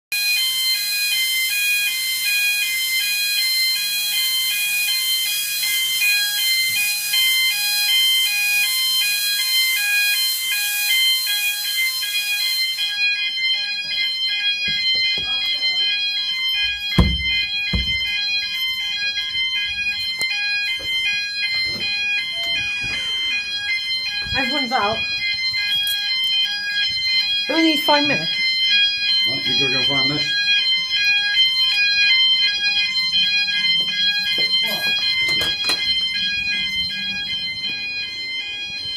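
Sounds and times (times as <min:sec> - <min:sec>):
fire alarm pulsing tone: 0:00.1 - 0:38.9
heavy thumps: 0:16.9 - 0:18.2
knocks: 0:17.0 - 0:18.1.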